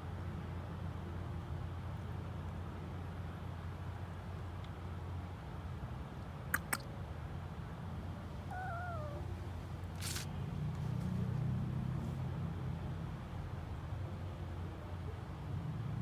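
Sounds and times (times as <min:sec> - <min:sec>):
sharp clicks: 0:06.6 - 0:06.9
cat meowing: 0:08.5 - 0:09.4.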